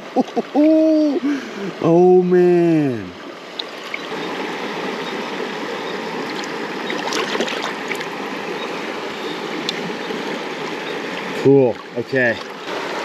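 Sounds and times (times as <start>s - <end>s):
creek water rushing: 0.0s - 13.0s
water splashing: 2.6s - 13.0s.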